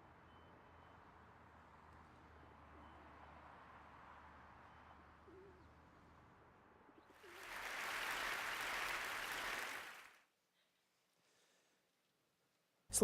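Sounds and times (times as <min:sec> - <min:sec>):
audience applause: 0:07.2 - 0:10.2.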